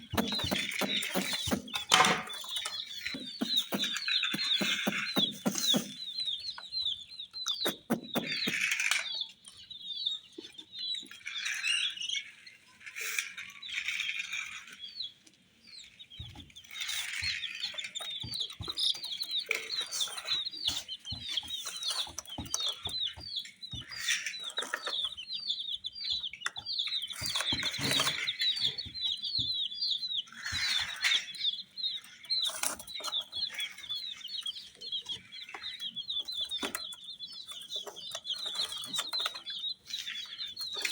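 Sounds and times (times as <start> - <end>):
baby chicks peeping: 0.0 - 40.9
rustling and taps of chicks moving: 0.0 - 40.9.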